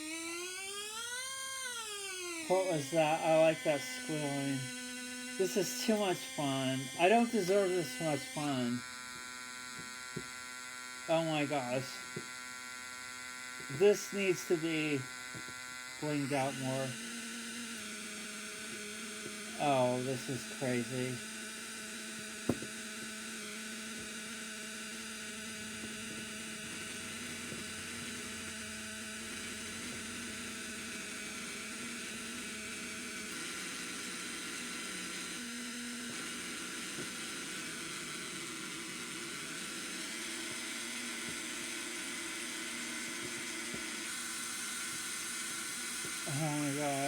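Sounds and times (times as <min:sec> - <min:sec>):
speaker hiss: 0:05.4 - 0:08.8, 0:11.1 - 0:12.0, 0:13.6 - 0:15.0, 0:19.6 - 0:21.2, 0:46.2 - 0:47.0.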